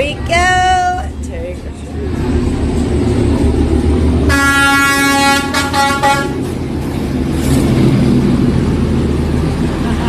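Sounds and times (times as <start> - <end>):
passing train rumble: 0.0 - 10.0
train horn blasting: 4.3 - 6.5.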